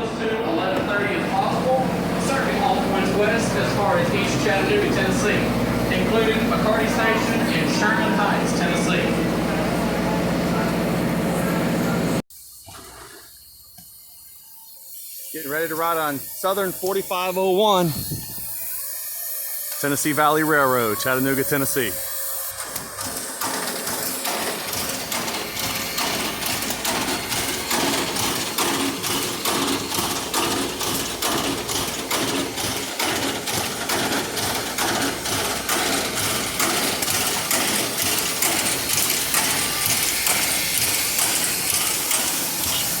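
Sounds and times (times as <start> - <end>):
train wheels clattering rhythmically: 22.6 - 43.0.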